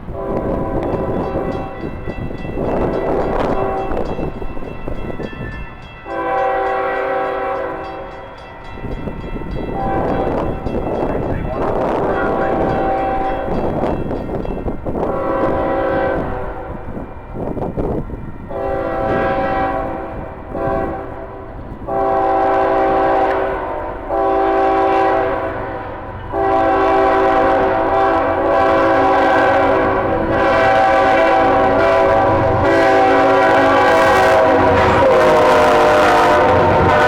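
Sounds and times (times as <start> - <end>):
train rumbling past: 0.0 - 37.0
locomotive air horn blasts: 0.1 - 1.9, 6.1 - 8.1, 9.8 - 10.4, 11.6 - 13.6, 15.0 - 17.0, 18.5 - 37.0.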